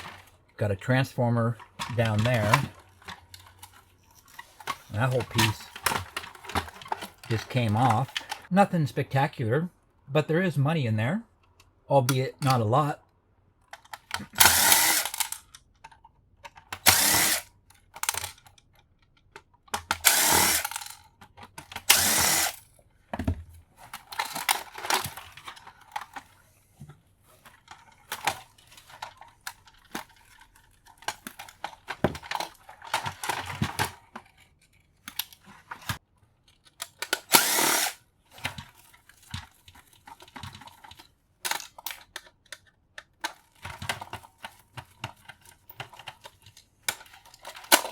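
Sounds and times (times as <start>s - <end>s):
loose parts clicking and clattering: 0.0s - 8.5s, 13.6s - 47.9s
power drill-driver running: 14.2s - 15.4s, 16.8s - 17.5s, 19.9s - 21.0s, 21.8s - 22.6s, 37.2s - 38.0s.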